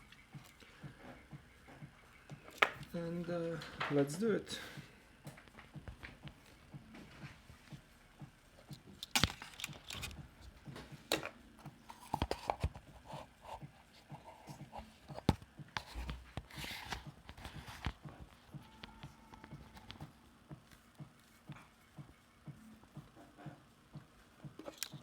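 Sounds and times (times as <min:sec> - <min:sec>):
small tools clicking and tapping: 0:08.7 - 0:11.4, 0:24.6 - 0:25.0.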